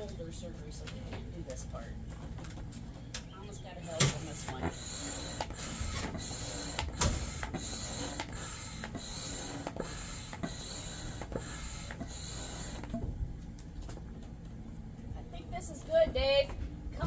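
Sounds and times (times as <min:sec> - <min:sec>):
manual air pump strokes: 0:03.8 - 0:13.1.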